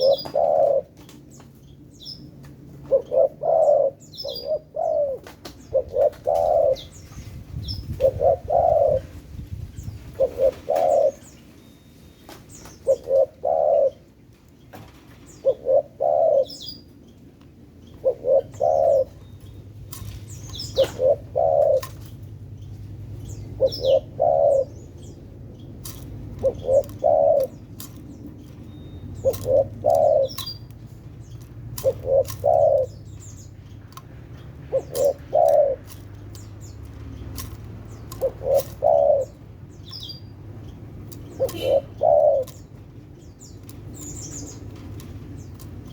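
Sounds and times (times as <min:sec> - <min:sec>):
dove cooing: 0:00.0 - 0:01.1, 0:02.8 - 0:07.1, 0:07.8 - 0:09.3, 0:10.1 - 0:11.4, 0:12.8 - 0:14.2, 0:15.3 - 0:16.9, 0:17.9 - 0:22.4, 0:23.2 - 0:45.9
faint high bird chirps: 0:26.4 - 0:33.8, 0:34.4 - 0:45.9.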